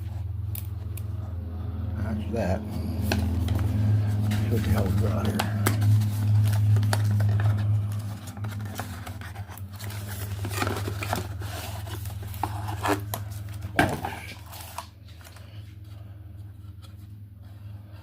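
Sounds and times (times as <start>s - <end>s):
steady low hum: 0.0s - 18.0s
cardboard packaging rustling and tearing: 2.8s - 15.8s.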